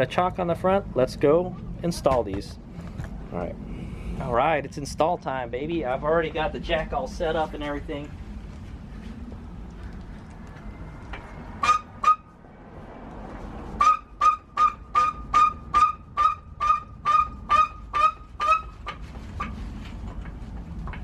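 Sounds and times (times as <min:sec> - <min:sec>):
floor jack squeaking: 0:13.8 - 0:20.0.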